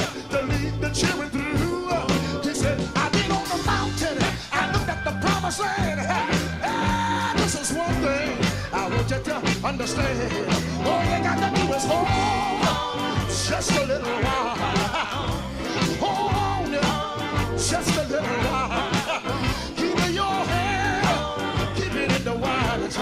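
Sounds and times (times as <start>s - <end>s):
bass line: 0.0s - 23.0s
lead voice singing: 0.0s - 23.0s
drum beat: 10.6s - 19.3s.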